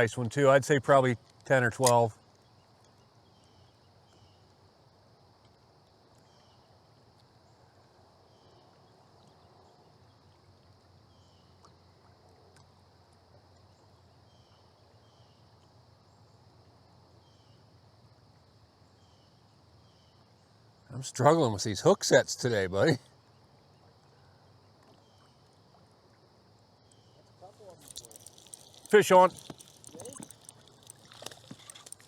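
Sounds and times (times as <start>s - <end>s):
steady high hiss: 27.4s - 32.0s.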